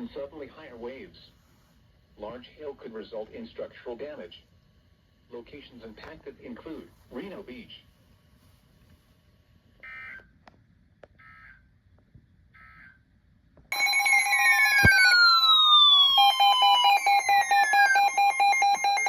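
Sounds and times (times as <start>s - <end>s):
loud layered alert tone: 13.8s - 19.0s.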